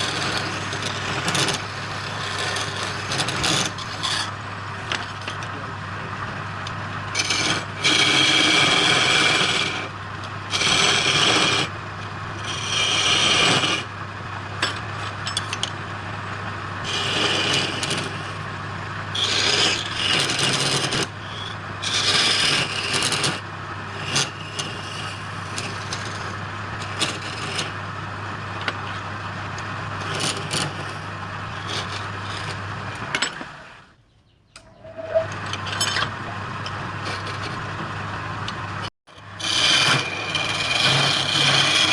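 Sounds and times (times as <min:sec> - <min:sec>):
wood lathe humming: 0:00.0 - 0:14.6, 0:15.8 - 0:33.8, 0:35.0 - 0:41.9
tool scraping spinning wood: 0:00.0 - 0:33.8, 0:34.8 - 0:41.9.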